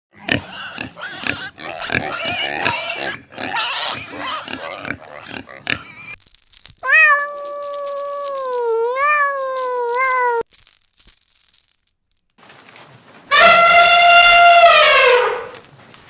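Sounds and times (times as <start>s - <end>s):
pigs squealing and grunting: 0.1s - 6.2s, 13.3s - 15.6s
cat meowing: 6.8s - 10.5s.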